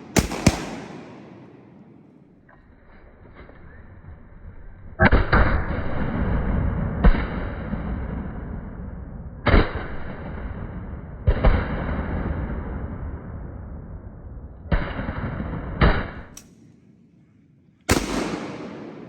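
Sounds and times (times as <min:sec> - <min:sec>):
shotgun blasts with echo: 0:00.0 - 0:02.4, 0:09.4 - 0:13.4, 0:14.6 - 0:16.6, 0:17.9 - 0:19.0.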